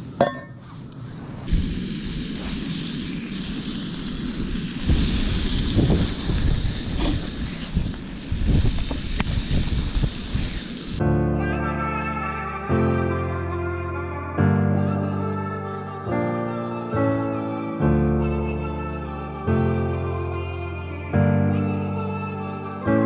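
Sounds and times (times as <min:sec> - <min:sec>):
wind buffeting microphone: 0:04.3 - 0:11.0.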